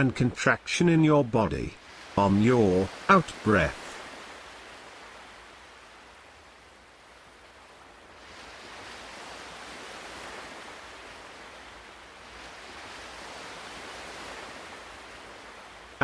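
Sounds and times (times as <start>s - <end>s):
ocean waves washing in: 0.0s - 16.0s.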